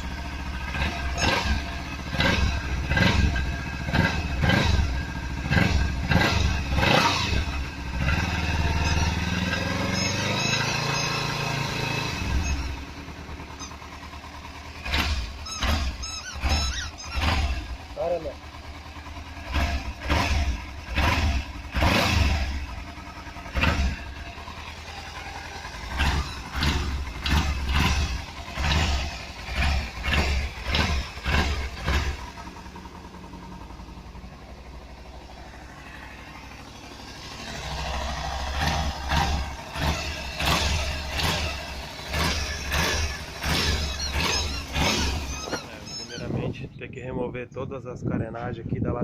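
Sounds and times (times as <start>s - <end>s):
motorcycle engine revving: 0.0s - 47.2s
motorcycle engine idling: 0.0s - 49.0s.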